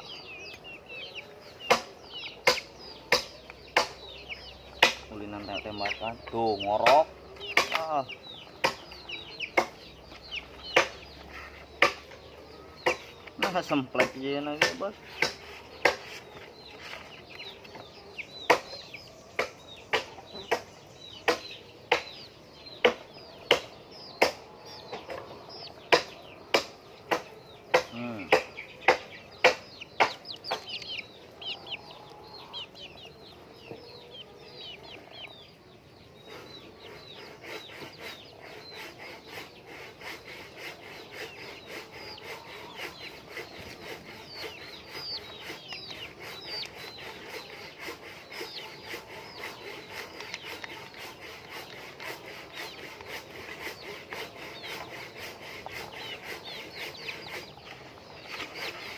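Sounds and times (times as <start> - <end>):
hens clucking and calling: 0.0 - 58.9
loud sharp knocks: 1.6 - 4.0, 4.8 - 5.1, 6.8 - 7.9, 9.5 - 9.8, 10.7 - 11.0, 11.8 - 12.2, 12.8 - 16.1, 22.8 - 25.2, 25.9 - 30.7.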